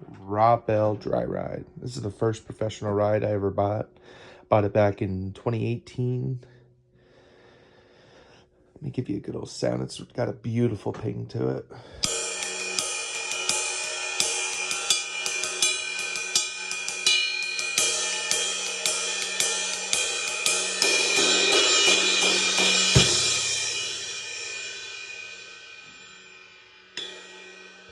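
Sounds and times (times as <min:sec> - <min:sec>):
ride cymbal pinging: 0:12.0 - 0:27.9.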